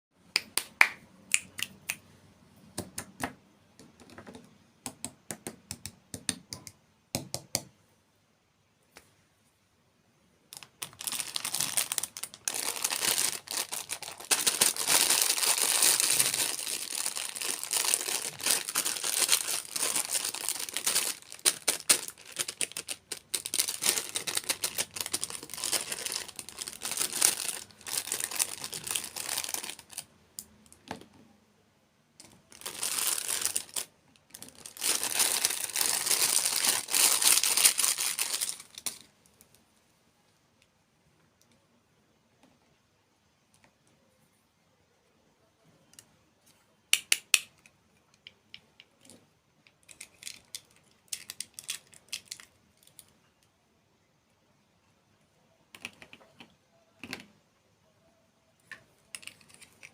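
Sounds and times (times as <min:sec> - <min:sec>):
plastic packaging crinkling and tearing: 0:10.5 - 0:30.1, 0:32.5 - 0:39.1, 0:49.8 - 0:53.1.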